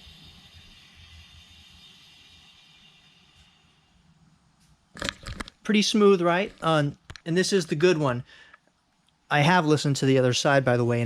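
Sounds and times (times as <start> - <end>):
wheel spinning whir: 0.0 - 3.8.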